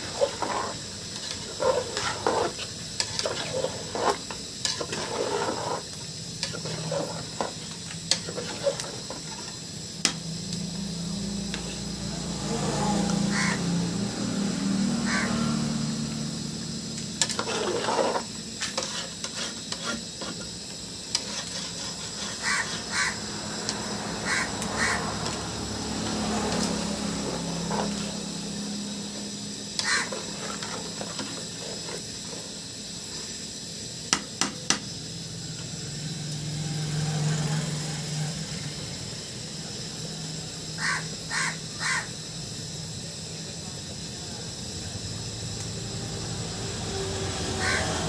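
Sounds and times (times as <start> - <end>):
crows cawing: 13.2 - 13.8, 15.0 - 15.6, 22.4 - 23.3, 24.2 - 25.2, 29.8 - 30.1, 40.8 - 42.2, 47.5 - 48.0.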